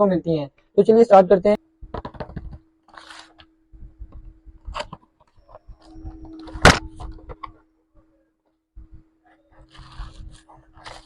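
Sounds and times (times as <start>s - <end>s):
steady hum: 0.0s - 11.0s
cardboard packaging rustling: 2.9s - 3.5s, 9.6s - 11.0s.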